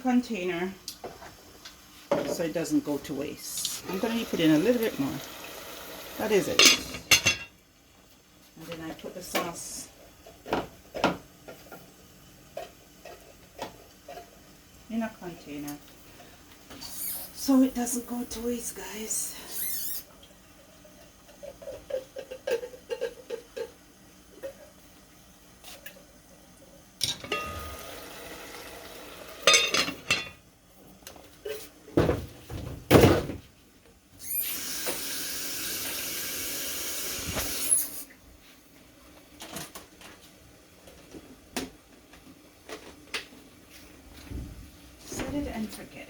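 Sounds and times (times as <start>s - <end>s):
tap running: 3.6s - 6.9s, 37.1s - 37.8s.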